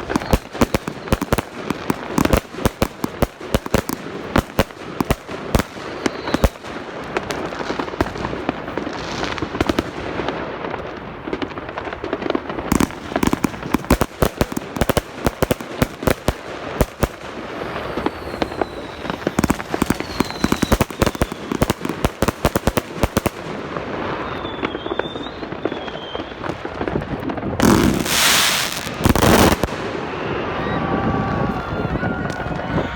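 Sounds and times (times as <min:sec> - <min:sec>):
gliding firework whistles: 0:00.0 - 0:03.1, 0:05.7 - 0:07.3, 0:14.8 - 0:26.7, 0:27.6 - 0:32.9
fireworks bangs and crackle: 0:00.0 - 0:32.9.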